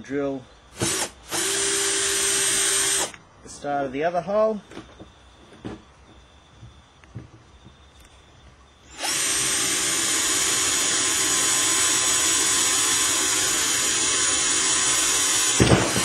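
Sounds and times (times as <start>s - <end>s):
power drill boring: 0.8s - 3.2s, 8.9s - 16.0s.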